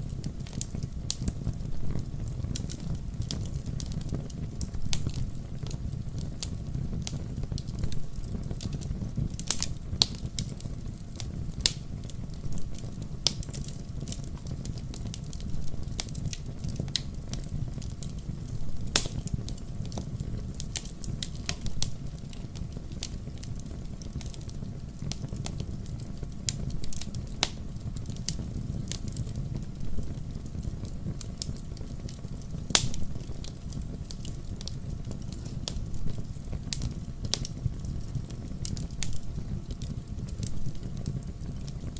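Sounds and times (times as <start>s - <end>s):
fire crackling and popping: 0.0s - 41.9s
fire rumbling: 0.0s - 41.9s.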